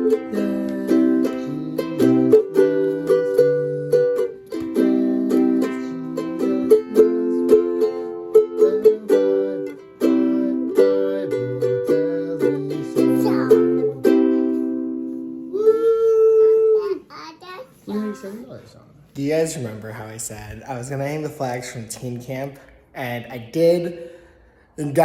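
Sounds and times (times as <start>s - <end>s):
acoustic string instrument strumming: 0.0s - 15.6s.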